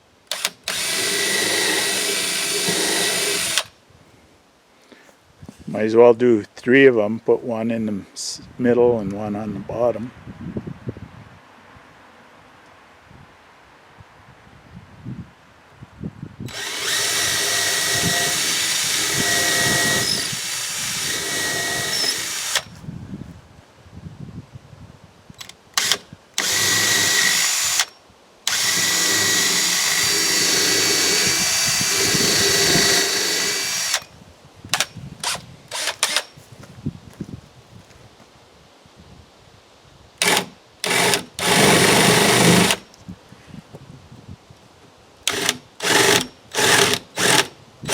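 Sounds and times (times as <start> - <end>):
power drill running: 0.3 - 3.7, 16.5 - 22.7, 25.8 - 27.9, 28.5 - 34.1, 34.8 - 36.3, 40.2 - 42.8, 45.3 - 47.9.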